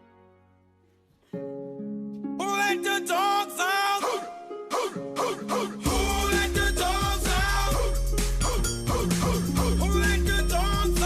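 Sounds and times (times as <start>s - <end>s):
voice-like melody: 2.4s - 11.0s.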